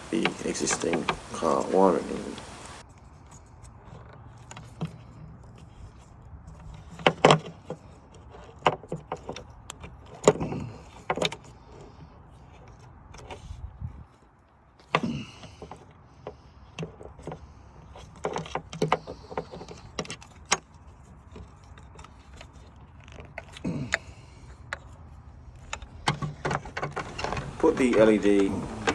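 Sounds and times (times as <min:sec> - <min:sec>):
sharp clicks and rattles: 0:00.0 - 0:01.8, 0:16.7 - 0:28.9
hands handling wiring and connector: 0:00.0 - 0:28.9.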